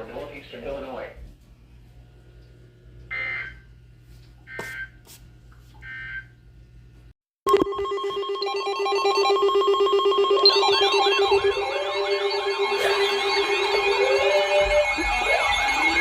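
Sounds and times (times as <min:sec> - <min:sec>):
pulsing electronic alert tone: 0:07.5 - 0:16.0
two-pitch data bursts: 0:07.5 - 0:16.0
warbling electronic sweeps: 0:08.5 - 0:16.0.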